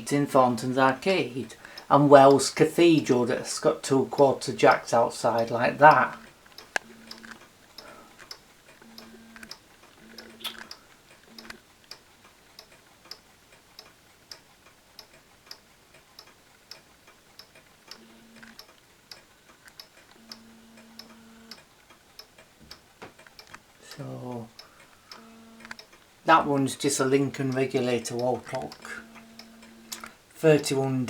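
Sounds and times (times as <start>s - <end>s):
wall clocks ticking: 0.0s - 31.0s
faint low hum: 23.8s - 31.0s.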